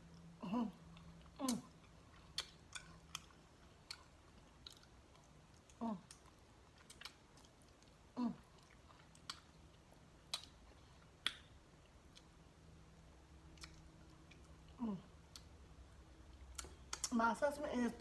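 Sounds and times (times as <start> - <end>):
person chewing meat: 0.1 - 17.1
person humming mm: 0.4 - 0.8, 8.2 - 8.4, 14.8 - 15.1
mouth clicks and lip smacks: 1.3 - 9.6, 10.2 - 12.4, 13.5 - 14.6, 16.4 - 17.2.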